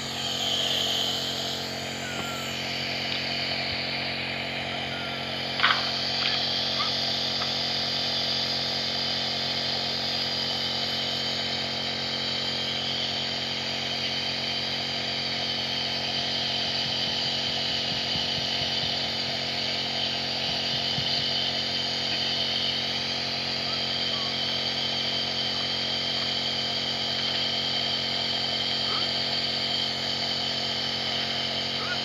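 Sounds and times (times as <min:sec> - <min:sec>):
nebulizer motor buzz and hiss: 0:00.0 - 0:32.0.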